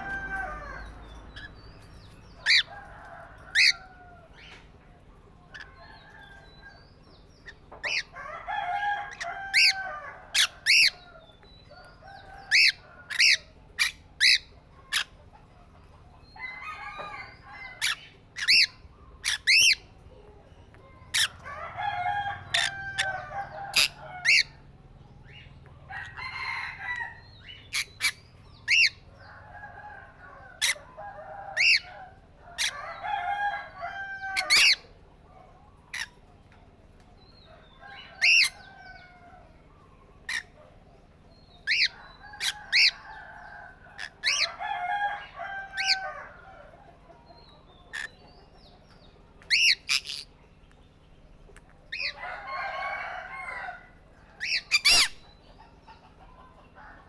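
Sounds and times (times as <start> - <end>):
parrots calling shrilly: 0.0 - 4.5, 7.4 - 11.1, 12.5 - 15.2, 16.4 - 19.9, 21.1 - 24.7, 26.0 - 29.1, 30.6 - 34.9, 35.9 - 36.2, 37.9 - 38.7, 40.2 - 40.6, 41.6 - 43.1, 43.9 - 46.3, 47.9 - 48.2, 49.4 - 50.3, 51.9 - 55.3
parrots chattering: 0.0 - 4.5, 7.4 - 11.2, 12.2 - 15.8, 16.4 - 20.1, 21.0 - 29.5, 30.5 - 35.0, 35.8 - 36.3, 37.6 - 39.3, 40.2 - 40.8, 41.6 - 46.4, 47.7 - 48.4, 49.4 - 50.4, 51.5 - 53.8, 54.4 - 56.8.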